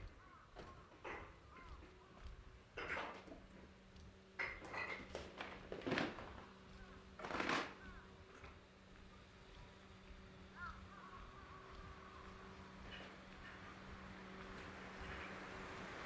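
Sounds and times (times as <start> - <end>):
bird calling: 10.5 - 13.9.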